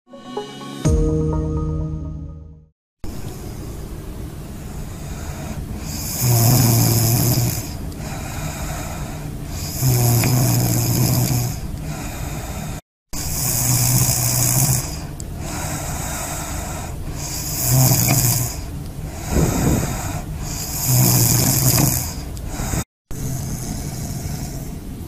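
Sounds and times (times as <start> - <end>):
woman snoring: 5.1 - 24.8.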